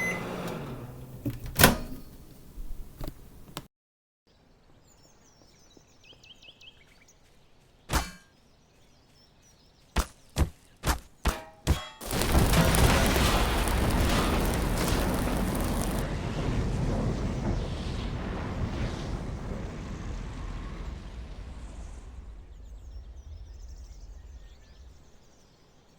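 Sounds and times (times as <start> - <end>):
microwave humming: 0.0 - 3.5
microwave thump: 1.2 - 2.1.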